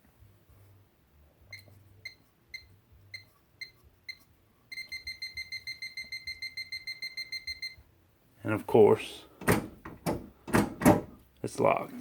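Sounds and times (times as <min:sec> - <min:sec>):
keypad lock beeping: 0:01.5 - 0:07.8.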